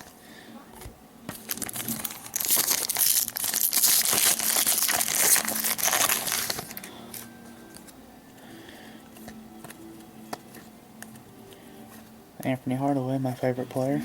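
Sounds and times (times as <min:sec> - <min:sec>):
foil wrapper crinkling: 0:01.3 - 0:07.9.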